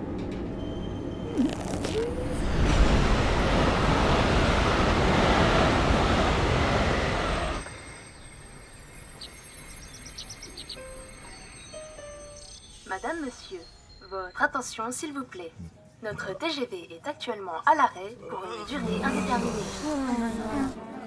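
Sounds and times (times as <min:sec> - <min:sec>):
high-speed train rumbling: 0:00.0 - 0:11.4, 0:18.8 - 0:21.0
faint bird chirps: 0:08.1 - 0:12.6.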